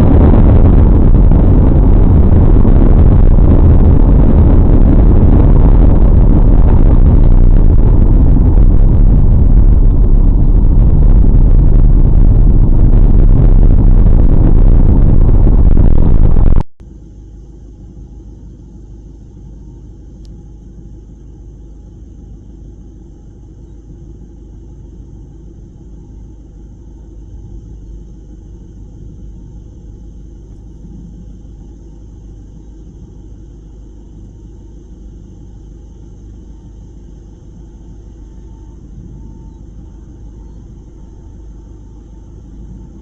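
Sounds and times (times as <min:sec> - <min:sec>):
low rumble: 0:00.0 - 0:17.2, 0:19.0 - 0:43.0
faint high-pitched tones: 0:34.1 - 0:43.0.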